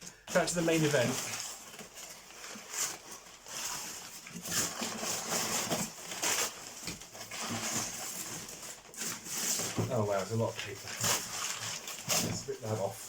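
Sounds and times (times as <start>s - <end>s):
paper and cardboard rustling: 0.3s - 13.0s.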